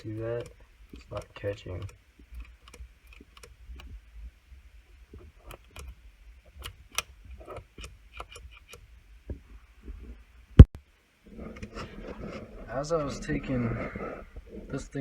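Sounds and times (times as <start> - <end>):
metallic gearshift clicks: 0.0 - 3.5.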